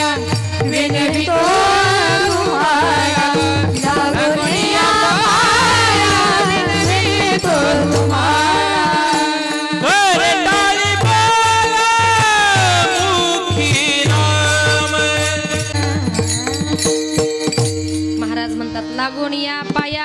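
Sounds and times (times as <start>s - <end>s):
hand drum beat: 0.0s - 18.4s
person singing devotional melody: 0.0s - 20.0s
held accompanying notes: 12.8s - 20.0s.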